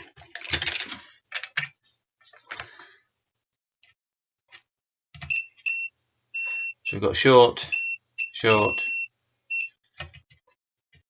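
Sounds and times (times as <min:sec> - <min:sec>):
tools clicking and rustling: 0:00.0 - 0:02.7
multimeter high beeping: 0:05.3 - 0:09.7.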